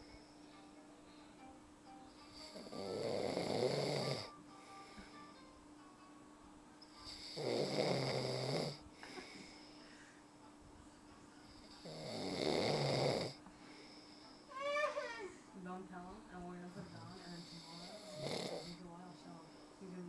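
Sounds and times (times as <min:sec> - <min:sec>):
man snoring: 0:02.3 - 0:04.4, 0:07.1 - 0:08.8, 0:11.7 - 0:13.4, 0:17.4 - 0:18.8.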